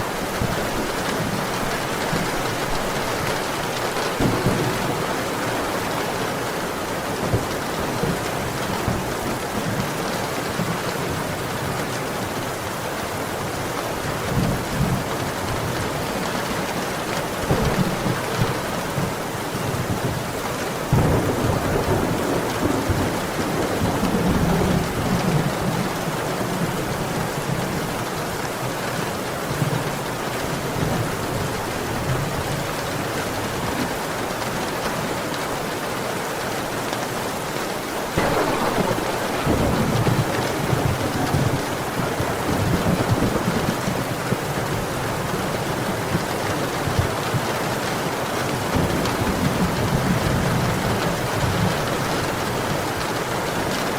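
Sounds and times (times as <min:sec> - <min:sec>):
heavy rain falling: 0:00.0 - 0:53.9
low thunder rumbling: 0:00.1 - 0:09.2, 0:20.9 - 0:27.0, 0:38.2 - 0:47.0.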